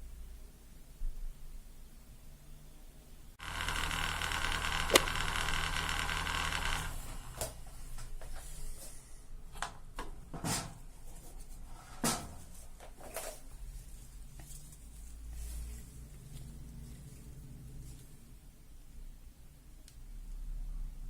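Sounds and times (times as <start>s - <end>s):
electric machine buzzing hum: 3.4s - 7.7s.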